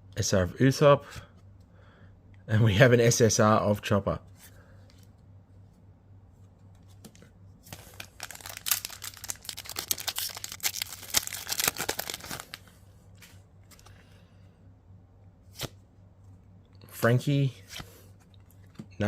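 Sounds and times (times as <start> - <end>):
foil wrapper tearing and crinkling: 7.7 - 12.6.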